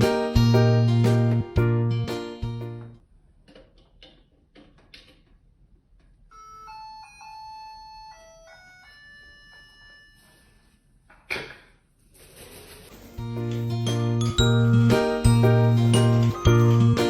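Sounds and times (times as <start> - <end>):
microwave beeper melody: 13.2 - 17.0.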